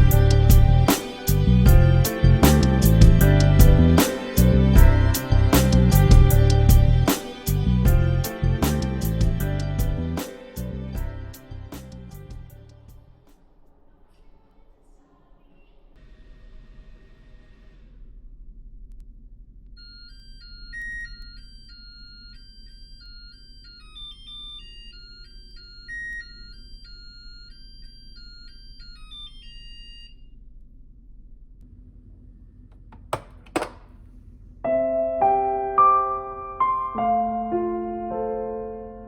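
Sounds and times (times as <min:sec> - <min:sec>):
soft piano music: 0:34.6 - 0:39.0.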